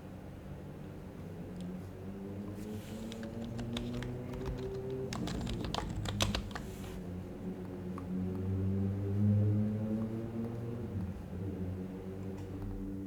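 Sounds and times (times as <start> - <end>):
soft background music: 2.0 - 13.0
keyboard typing: 2.6 - 7.0.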